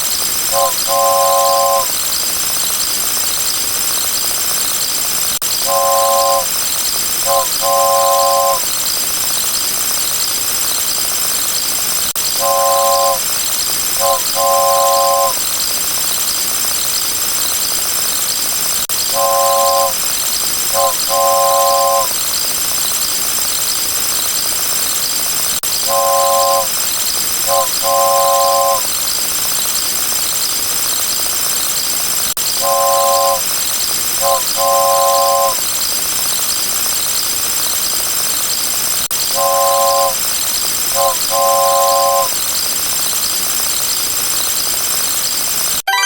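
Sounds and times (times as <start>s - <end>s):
constant hiss: 0.0s - 1.9s, 5.4s - 8.8s, 12.2s - 15.4s, 18.9s - 22.2s, 25.7s - 29.0s, 32.4s - 35.6s
toy train horn blast: 0.0s - 2.0s, 5.6s - 8.7s, 12.3s - 13.4s, 14.0s - 15.4s, 19.0s - 22.2s, 25.8s - 26.8s, 27.4s - 29.0s, 32.5s - 35.6s, 39.2s - 40.3s, 40.9s - 42.4s
high wavering tones: 0.5s - 1.9s, 5.6s - 6.5s, 7.3s - 8.6s, 12.3s - 13.3s, 14.0s - 15.4s, 19.1s - 20.0s, 20.8s - 22.2s, 25.8s - 26.8s, 27.5s - 28.9s, 32.5s - 33.5s, 34.2s - 35.6s, 39.3s - 40.2s, 41.0s - 42.4s.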